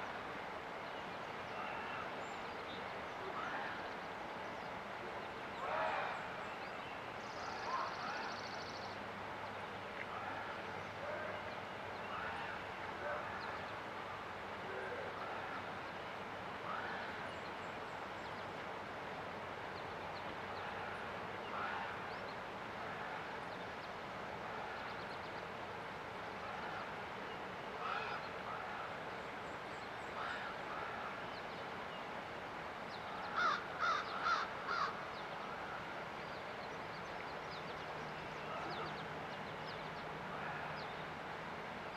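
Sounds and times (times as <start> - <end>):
crow cawing: 27.8 - 28.2, 33.4 - 35.0.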